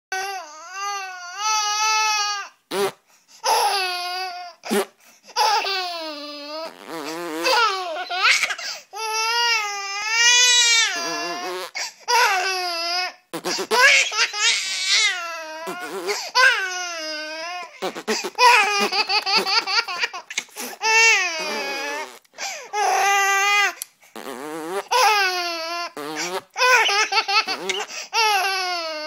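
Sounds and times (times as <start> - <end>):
short sharp fart sounds: 2.7 - 3.0, 4.7 - 5.0, 6.7 - 7.6, 13.3 - 14.1, 17.8 - 18.6, 24.2 - 25.0, 26.0 - 27.0
baby laughing in high squeals: 5.4 - 9.2, 10.0 - 12.4, 13.5 - 22.1, 24.8 - 29.0.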